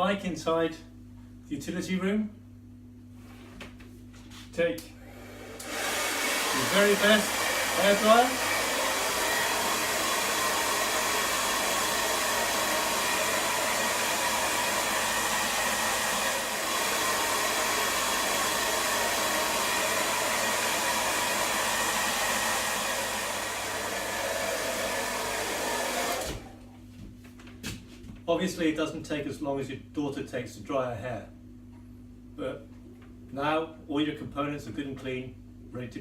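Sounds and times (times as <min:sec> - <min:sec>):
hairdryer blowing: 0:05.0 - 0:26.7.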